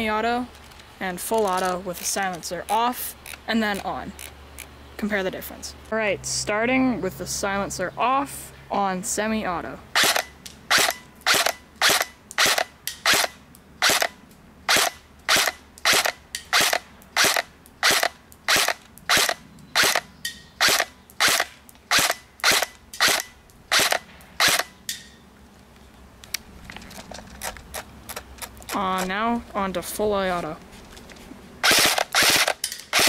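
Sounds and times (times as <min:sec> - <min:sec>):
airsoft rifle shots: 0:10.0 - 0:25.1, 0:31.6 - 0:33.0.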